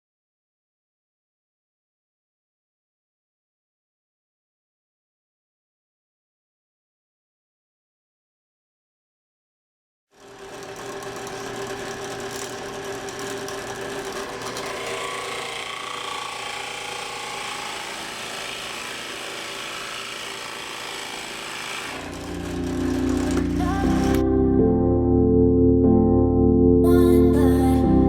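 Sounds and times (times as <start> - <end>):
power tool running: 10.1 - 24.2
music: 22.2 - 28.0.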